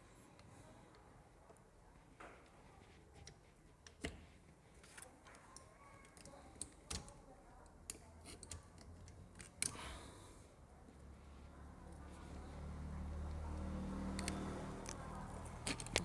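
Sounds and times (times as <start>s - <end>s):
metal parts clicking and tapping: 3.2s - 7.2s, 7.9s - 10.0s, 14.2s - 16.0s.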